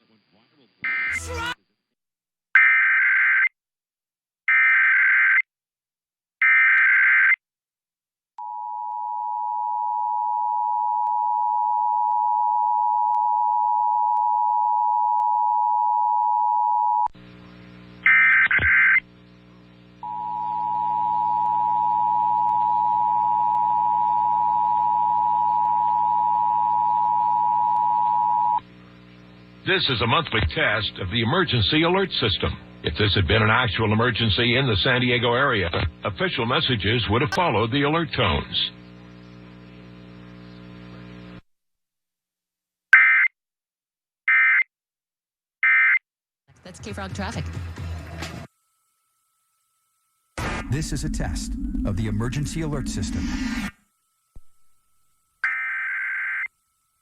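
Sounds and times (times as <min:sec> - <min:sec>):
data burst screech: 0:00.9 - 0:01.6, 0:50.4 - 0:53.8
low electrical hum: 0:17.1 - 0:41.4, 0:48.6 - 0:55.4.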